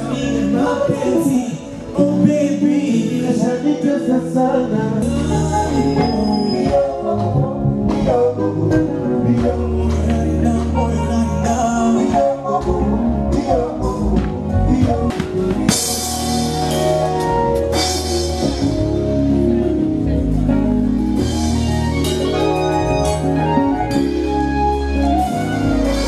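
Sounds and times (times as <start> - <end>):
man singing: 0.0 - 18.8
live band playing: 0.0 - 26.0.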